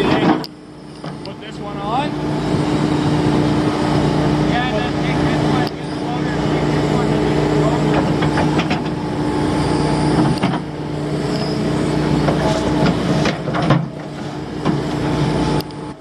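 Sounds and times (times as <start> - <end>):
diesel engine running: 0.0 - 16.0
metallic clanks and knocks: 12.2 - 14.9.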